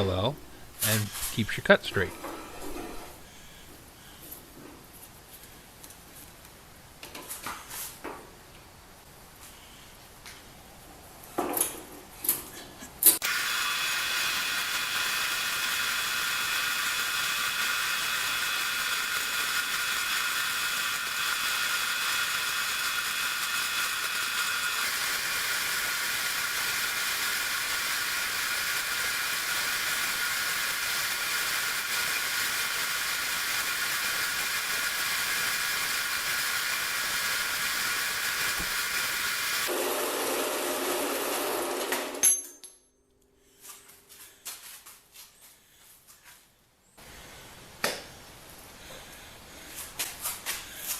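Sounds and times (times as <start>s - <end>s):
band saw cutting steel: 13.2s - 42.2s.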